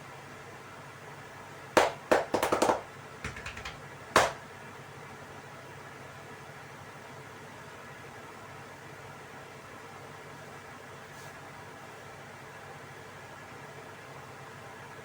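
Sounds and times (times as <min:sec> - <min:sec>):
hand slaps of massage: 0:01.8 - 0:04.4.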